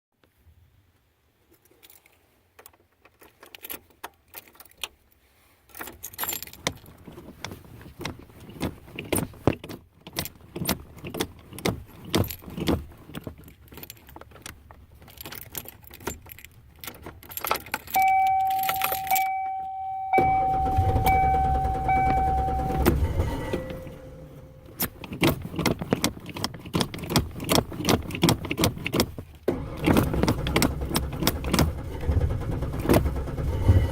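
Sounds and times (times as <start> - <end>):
keys jangling: 10.2 - 29.0
steady electronic tone: 18.0 - 24.7
starter cranking engine: 20.2 - 33.9.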